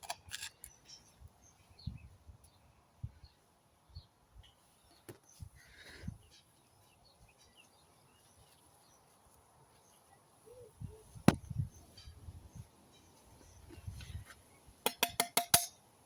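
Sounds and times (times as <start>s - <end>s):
faint bird chirps: 9.7s - 14.1s.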